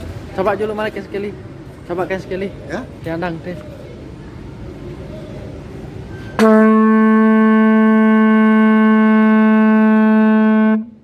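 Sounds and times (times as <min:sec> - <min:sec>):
conch shell trumpet blown: 0:06.4 - 0:11.0.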